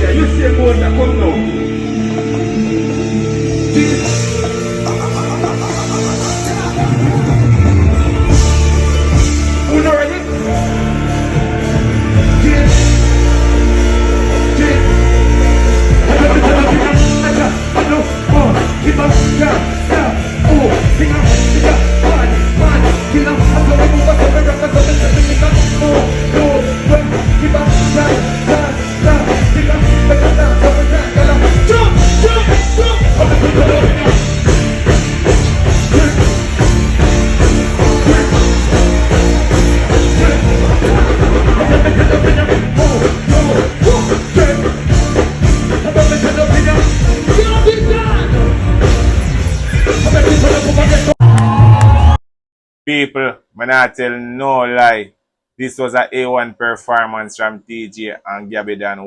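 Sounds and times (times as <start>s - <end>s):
heavy bass beat: 2.1s - 52.2s
performer singing: 9.6s - 48.6s.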